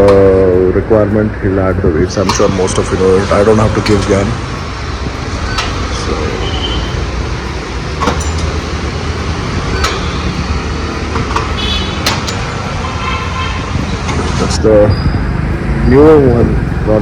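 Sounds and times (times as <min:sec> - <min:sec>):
machinery hum: 0:00.0 - 0:17.0
sharp clicks and knocks: 0:02.1 - 0:14.6.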